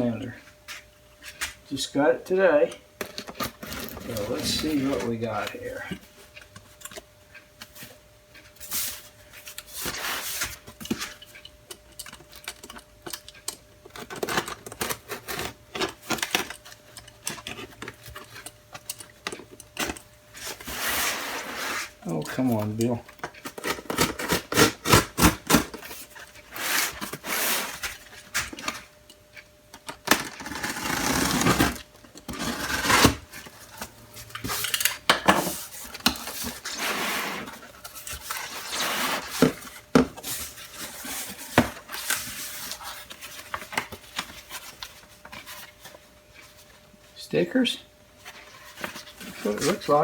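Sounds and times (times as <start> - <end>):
cardboard rustling and scraping: 3.2 - 6.0, 19.8 - 29.0, 30.1 - 34.7, 35.4 - 46.8, 48.2 - 50.0.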